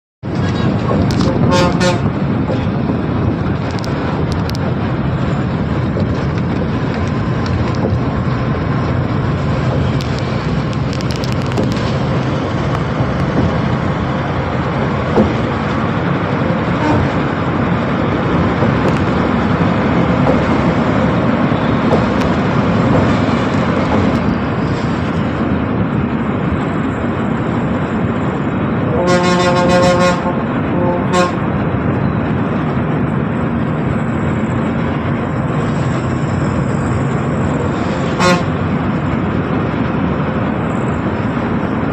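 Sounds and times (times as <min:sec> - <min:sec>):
road traffic and engine noise: 0:00.0 - 0:41.9
bus horn blast: 0:00.6 - 0:02.3, 0:16.4 - 0:17.4, 0:28.8 - 0:31.5, 0:37.8 - 0:38.7.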